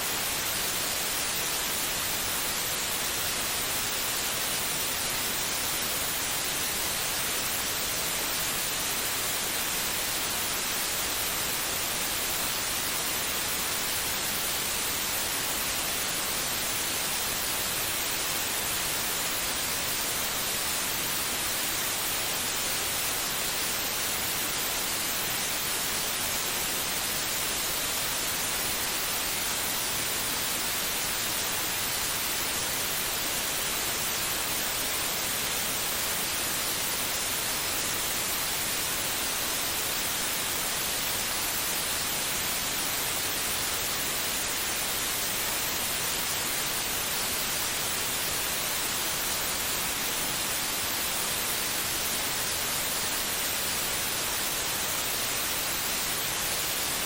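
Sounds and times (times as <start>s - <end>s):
white noise hiss: 0.0s - 57.0s.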